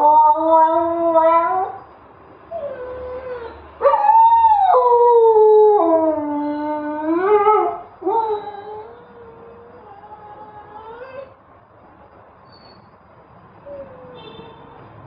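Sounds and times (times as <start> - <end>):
husky howling: 0.0 - 1.8, 2.6 - 11.4.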